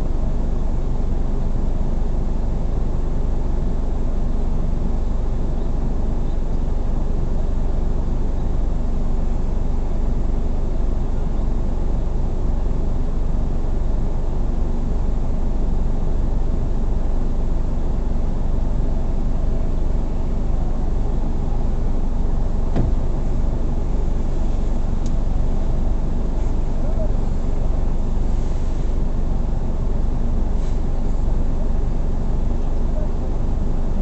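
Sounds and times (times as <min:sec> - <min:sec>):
car engine and road noise: 0:00.0 - 0:34.0
faint constant hum: 0:00.0 - 0:34.0.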